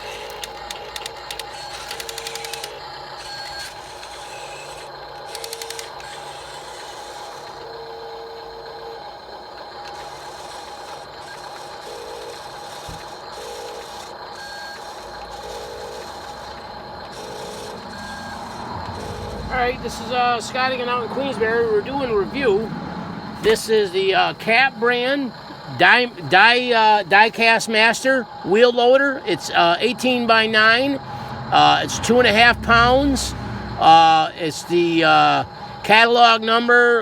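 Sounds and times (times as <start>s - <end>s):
electric motor whine: 0.0s - 36.8s
short beeps: 17.2s - 21.2s.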